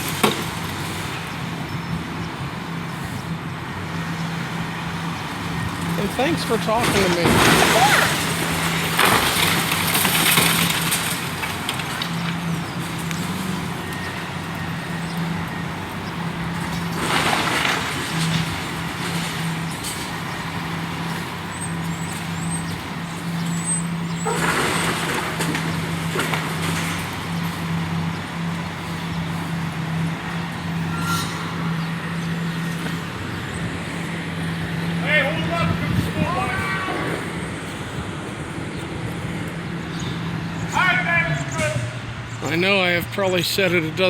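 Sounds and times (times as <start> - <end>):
traffic engine hum: 0.0 - 44.0
vehicles rushing past: 0.0 - 44.0.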